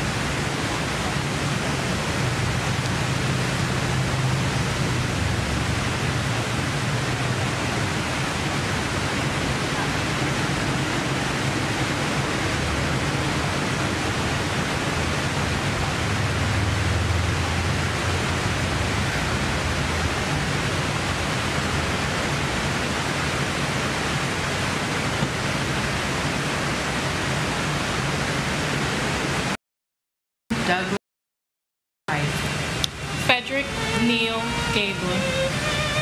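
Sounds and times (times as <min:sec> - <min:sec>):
steady rushing noise: 0:00.0 - 0:29.6, 0:32.1 - 0:36.0.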